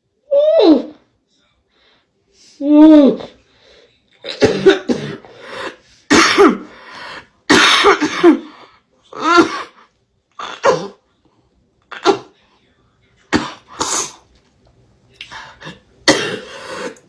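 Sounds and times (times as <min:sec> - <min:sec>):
woman coughing: 0:04.2 - 0:06.8, 0:07.5 - 0:08.5, 0:09.2 - 0:09.8, 0:10.4 - 0:11.0, 0:11.9 - 0:12.4, 0:13.3 - 0:14.1, 0:15.6 - 0:17.0.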